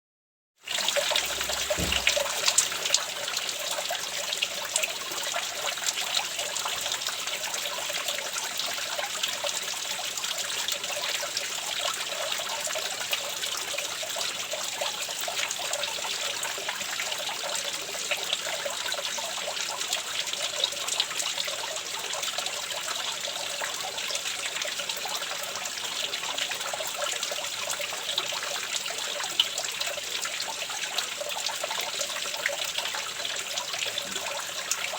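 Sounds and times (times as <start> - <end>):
running water trickling: 0.6 - 34.9.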